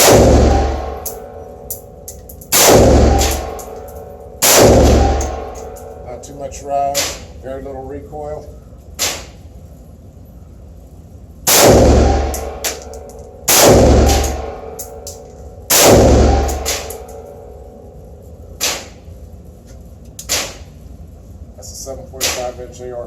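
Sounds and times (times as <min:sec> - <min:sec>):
pistol gunshots: 0:00.0 - 0:01.2, 0:02.5 - 0:03.8, 0:04.4 - 0:05.8, 0:09.0 - 0:09.4, 0:11.5 - 0:14.8, 0:15.7 - 0:17.1, 0:18.6 - 0:19.0, 0:20.2 - 0:20.7
faint sharp cracks: 0:09.0 - 0:09.4, 0:18.6 - 0:19.0, 0:19.7 - 0:20.8, 0:22.2 - 0:22.7.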